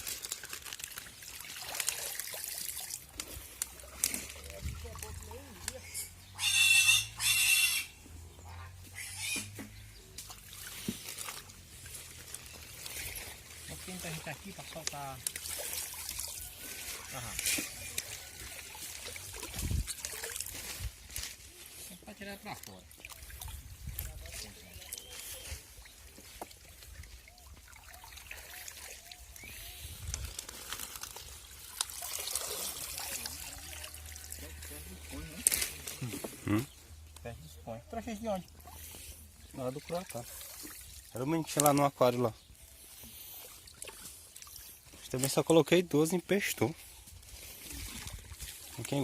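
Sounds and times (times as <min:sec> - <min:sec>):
small splashes and drips: 0:00.0 - 0:05.8, 0:09.5 - 0:21.9, 0:22.5 - 0:36.1, 0:38.0 - 0:45.4, 0:46.7 - 0:49.0
harsh animal calls: 0:05.7 - 0:10.0
water trickling in fish tank: 0:26.6 - 0:34.8.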